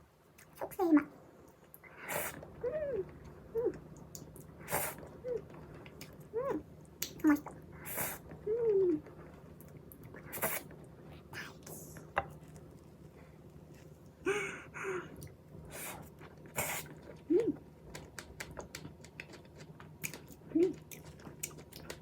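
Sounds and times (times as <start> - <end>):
wet chewing mouth sounds: 15.2 - 22.0.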